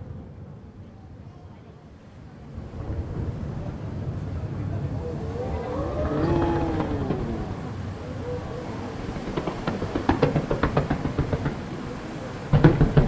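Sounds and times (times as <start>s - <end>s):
low rolling rumble: 2.5s - 9.9s.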